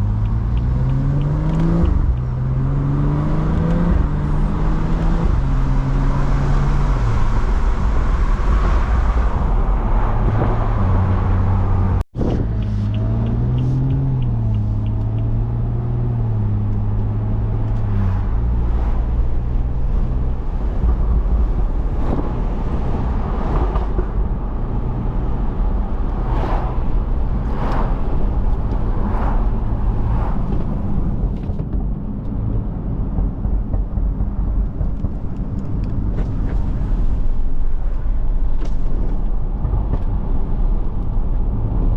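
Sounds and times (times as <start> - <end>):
car engine from inside car: 0.0 - 41.9.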